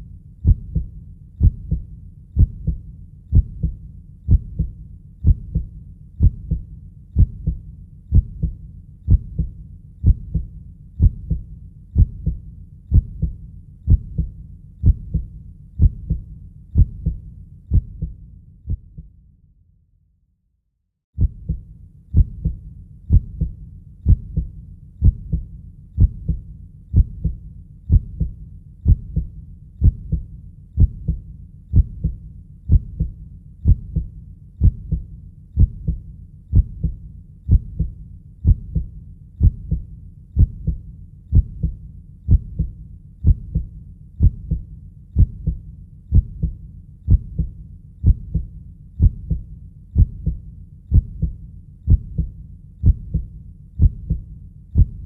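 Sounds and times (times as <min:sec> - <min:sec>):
heartbeat lub-dub: 0:00.0 - 0:19.1, 0:21.2 - 0:55.0.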